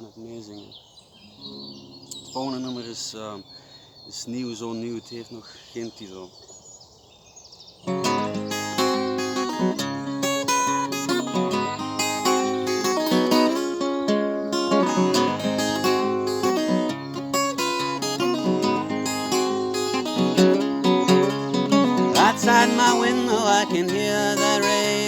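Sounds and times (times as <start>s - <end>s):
acoustic guitar picking: 1.3s - 3.1s, 7.9s - 25.0s.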